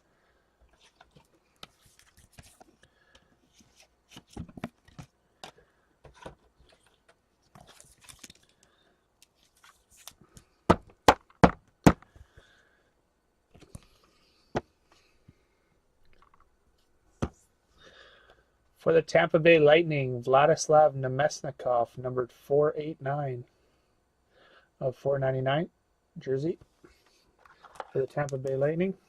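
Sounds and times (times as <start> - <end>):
cards clicking and rustling: 0.7 - 10.5.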